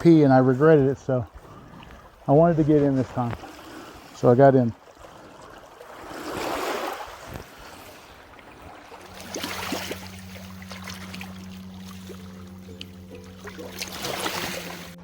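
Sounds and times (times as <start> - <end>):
water lapping in shallows: 0.0 - 15.0
sharp water splashes: 1.4 - 15.0
background music drone: 9.0 - 15.0.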